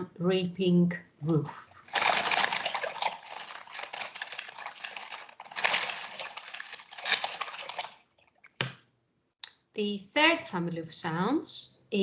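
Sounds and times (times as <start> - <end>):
crackling patter of clicks: 1.8 - 8.8.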